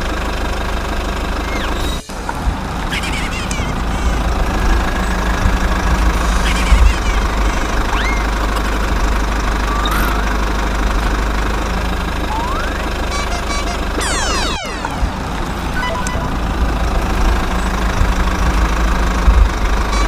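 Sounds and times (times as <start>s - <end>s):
diesel engine knocking rumble: 0.0s - 14.0s, 14.7s - 20.0s
brief rising chirps: 12.3s - 16.4s.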